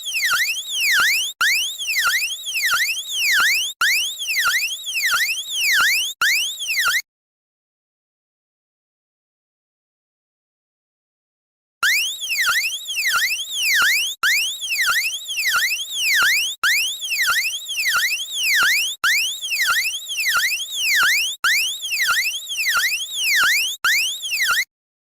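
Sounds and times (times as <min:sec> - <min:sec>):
warbling electronic siren: 0:00.1 - 0:07.0, 0:11.8 - 0:24.7.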